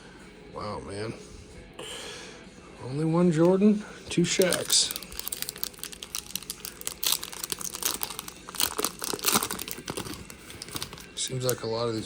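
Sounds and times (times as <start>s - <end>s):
wrapper crinkling: 4.2s - 11.6s.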